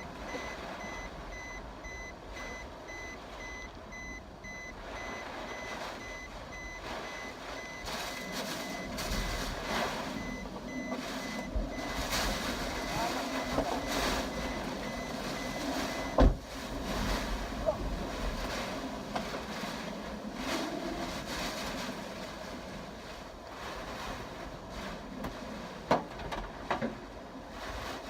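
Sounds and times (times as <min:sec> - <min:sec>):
electronic warning beeper: 0:00.0 - 0:16.2.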